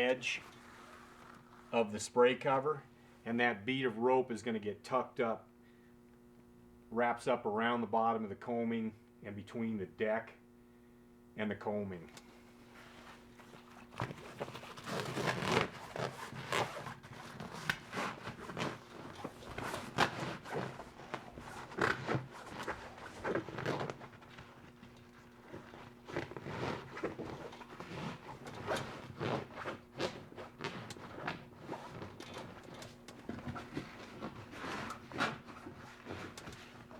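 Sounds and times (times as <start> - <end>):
fabric rustling and scraping: 0.2 - 1.8, 12.3 - 36.9.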